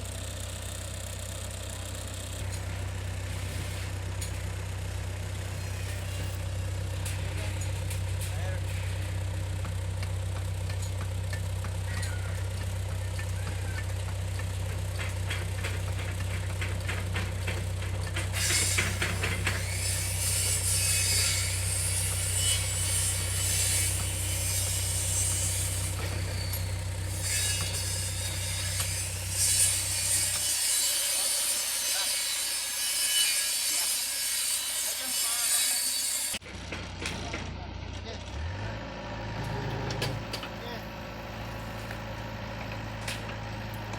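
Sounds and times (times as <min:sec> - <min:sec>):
diesel engine idling: 0:00.0 - 0:19.8, 0:24.0 - 0:27.2, 0:36.4 - 0:43.9
harsh hissing and scraping: 0:05.3 - 0:09.2, 0:18.3 - 0:36.4.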